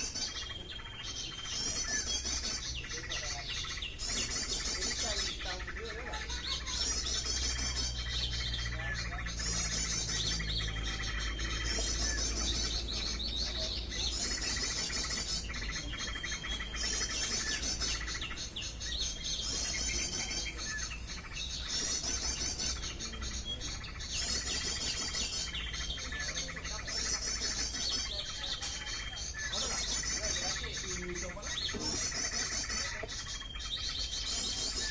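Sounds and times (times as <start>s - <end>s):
bird call through loudspeaker: 0.0s - 34.9s.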